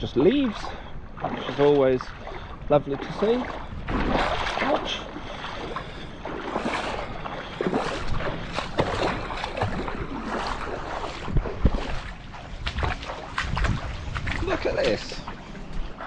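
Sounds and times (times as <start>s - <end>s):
seawater sloshing and lapping: 0.0s - 16.0s
wind buffeting microphone: 0.0s - 16.0s
sharp low thumps: 10.9s - 16.0s.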